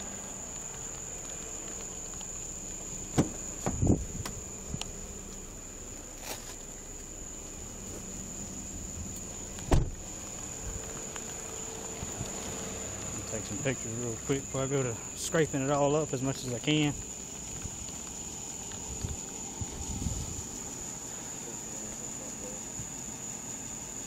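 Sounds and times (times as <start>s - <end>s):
night insects droning: 0.0s - 24.0s
short thumps: 3.1s - 4.5s, 9.5s - 10.1s.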